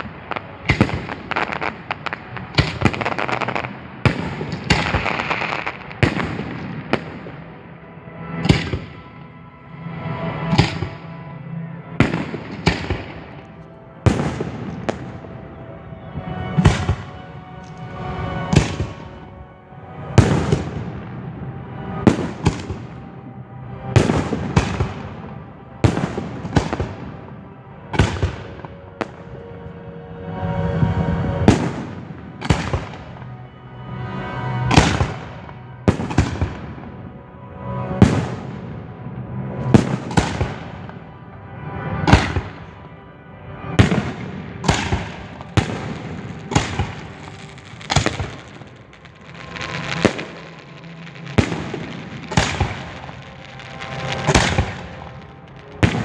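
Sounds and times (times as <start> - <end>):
fireworks crackling bangs: 0.0 - 7.4, 12.0 - 15.4, 16.2 - 19.2, 20.2 - 21.0, 22.0 - 23.0, 25.8 - 27.2, 30.8 - 33.2, 34.7 - 36.6, 38.0 - 38.6, 39.6 - 40.8, 43.8 - 56.0
fireworks booming: 14.0 - 15.4, 16.5 - 19.2, 20.2 - 21.0, 38.0 - 38.6, 43.8 - 56.0.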